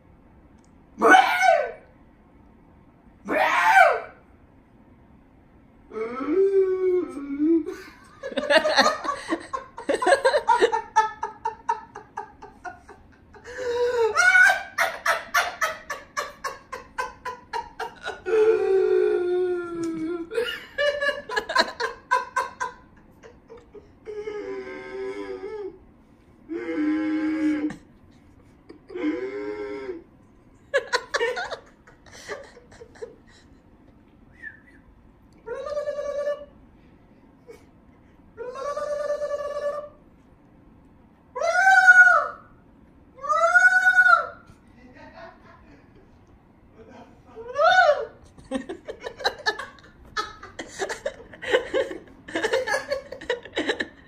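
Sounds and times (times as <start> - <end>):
person wailing: 5.9 - 11.8, 13.4 - 15.0, 16.9 - 20.6, 24.0 - 25.8
person laughing: 7.0 - 25.7, 30.7 - 33.6, 46.8 - 54.0.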